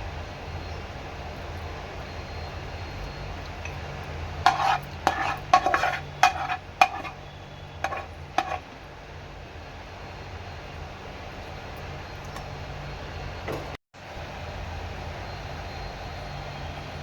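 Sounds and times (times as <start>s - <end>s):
spoon scraping a cooking vessel: 4.4s - 8.8s.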